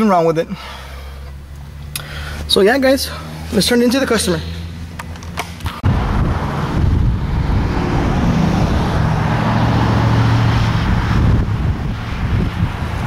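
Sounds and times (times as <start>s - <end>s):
vehicle engine running: 0.4s - 13.0s
wind rumbling on microphone: 5.8s - 13.0s.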